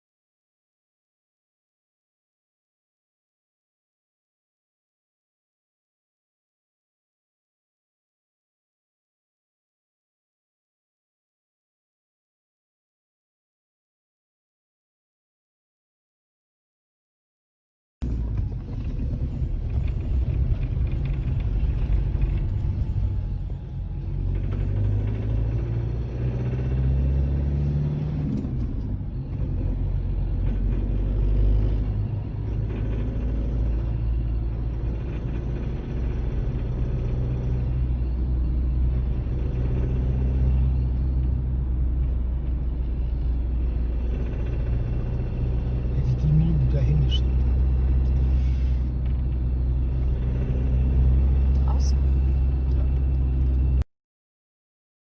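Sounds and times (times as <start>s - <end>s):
diesel car engine accelerating: 18.0s - 53.9s.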